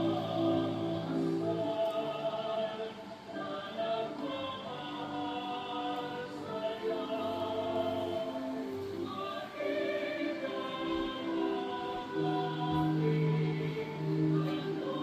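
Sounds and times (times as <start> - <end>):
choir singing sacred music: 0.0 - 15.0.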